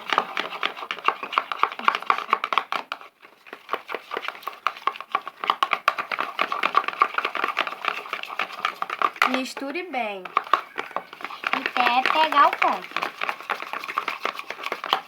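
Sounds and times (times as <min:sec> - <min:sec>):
utensil scraping container: 0:00.0 - 0:15.0.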